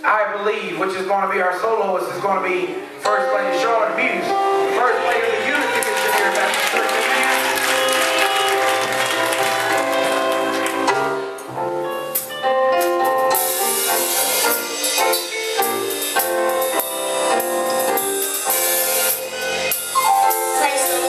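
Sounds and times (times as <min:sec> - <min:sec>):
keyboard chords: 0:02.3 - 0:21.0
drums and cymbals: 0:11.5 - 0:21.0.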